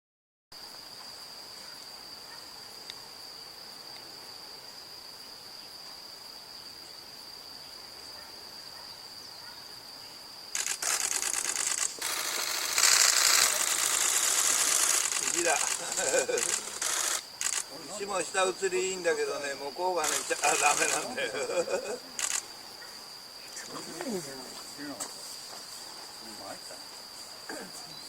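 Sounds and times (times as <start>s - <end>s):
faint hiss: 0.6s - 28.0s
camera shutter firing in bursts: 10.6s - 17.7s, 20.0s - 21.1s, 22.2s - 22.5s.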